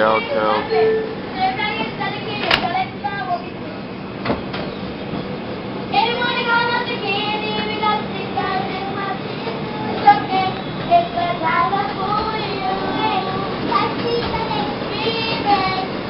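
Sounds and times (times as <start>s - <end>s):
subway train running noise: 0.0s - 16.0s
girls singing: 5.9s - 16.0s.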